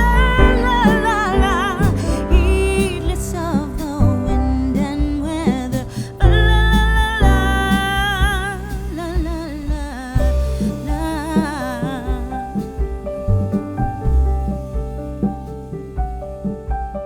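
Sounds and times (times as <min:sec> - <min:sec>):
song with bass and sustained notes: 0:00.0 - 0:17.0.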